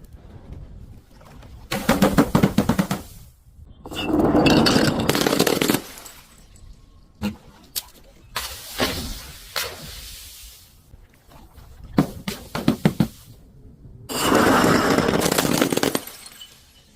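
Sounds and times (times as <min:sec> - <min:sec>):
objects crushing and breaking: 0:03.9 - 0:07.0, 0:14.1 - 0:16.9.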